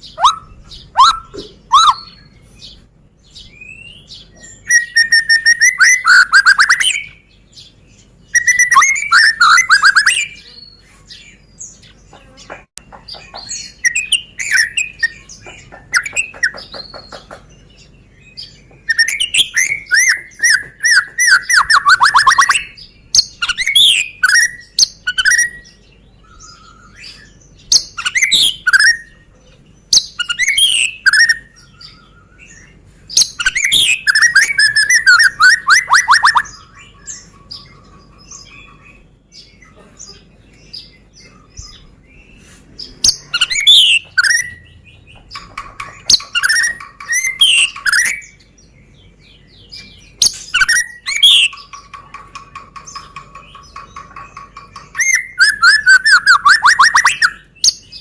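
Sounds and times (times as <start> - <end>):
bird singing whistled phrases: 0.0 - 2.4, 3.4 - 7.2, 8.3 - 10.6, 13.7 - 15.3, 18.8 - 29.2, 30.0 - 32.6, 33.2 - 37.2, 43.2 - 44.7, 46.1 - 48.4, 49.7 - 51.6, 54.8 - 58.0.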